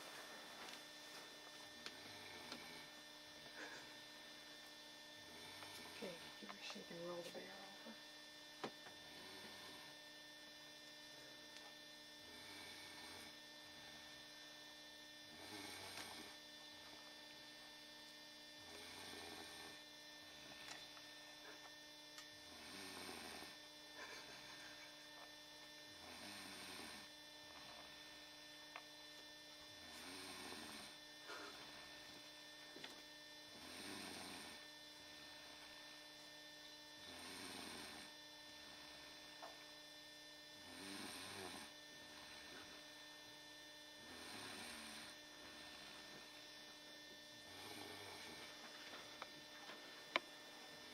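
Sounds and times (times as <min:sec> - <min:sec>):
electrical hum: 0:00.0 - 0:50.9
person snoring: 0:01.8 - 0:04.0, 0:05.2 - 0:06.4, 0:09.0 - 0:10.0, 0:12.2 - 0:14.2, 0:15.3 - 0:16.4, 0:18.6 - 0:20.9, 0:22.4 - 0:24.9, 0:25.9 - 0:27.2, 0:29.8 - 0:32.3, 0:33.5 - 0:36.0, 0:37.0 - 0:39.4, 0:40.6 - 0:42.8, 0:43.9 - 0:46.4, 0:47.3 - 0:49.0.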